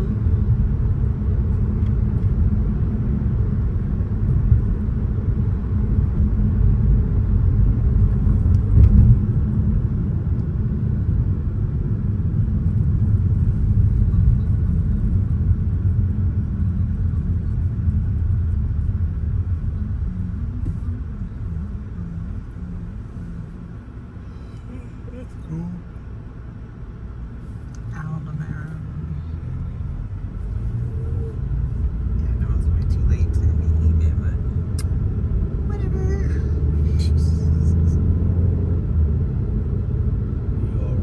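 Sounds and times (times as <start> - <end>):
car tyres and engine rumble: 0.0 - 41.0.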